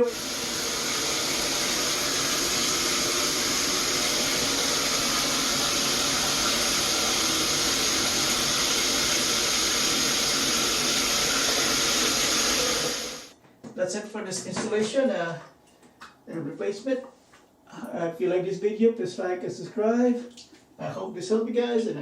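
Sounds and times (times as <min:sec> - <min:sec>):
shower water spraying into tub: 0:00.0 - 0:13.3.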